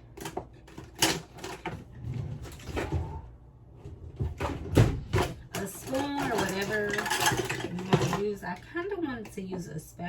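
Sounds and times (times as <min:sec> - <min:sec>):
cabinet doors knocking and clattering: 0:03.8 - 0:06.6.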